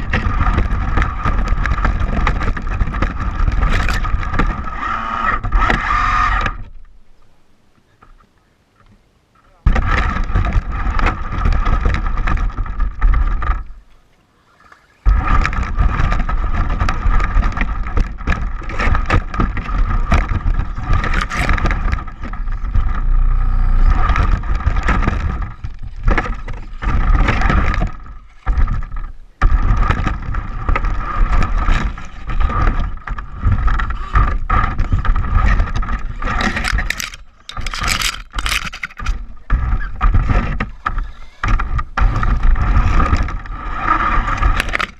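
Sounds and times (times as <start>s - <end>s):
wind on microphone: 0.0s - 6.9s, 15.0s - 44.9s
electric motor whine: 3.8s - 6.7s, 22.4s - 24.2s, 40.4s - 44.9s
tyres scraping gravel: 14.8s - 44.9s.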